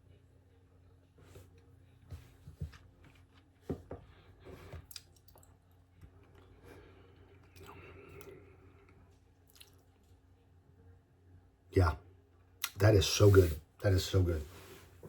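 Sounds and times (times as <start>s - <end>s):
person sipping and smacking lips: 7.3s - 8.9s, 9.5s - 9.9s.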